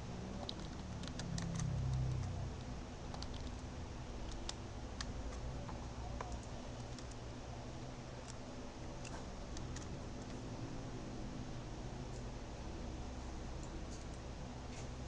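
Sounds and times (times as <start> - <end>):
steady low hum: 0.0 - 15.0
keyboard key clicks: 0.4 - 3.6.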